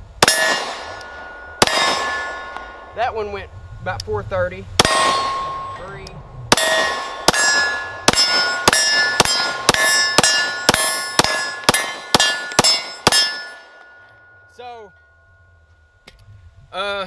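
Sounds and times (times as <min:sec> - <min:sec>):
pistol shots: 0:00.2 - 0:02.8, 0:04.8 - 0:05.8, 0:06.5 - 0:13.9
steel target ringing: 0:00.2 - 0:03.1, 0:04.8 - 0:16.0.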